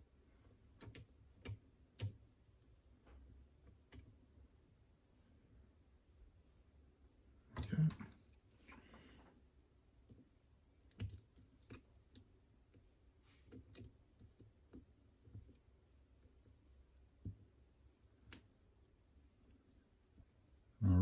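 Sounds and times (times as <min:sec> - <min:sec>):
metallic clicks of lock picking: 0:10.8 - 0:12.2, 0:13.5 - 0:14.4.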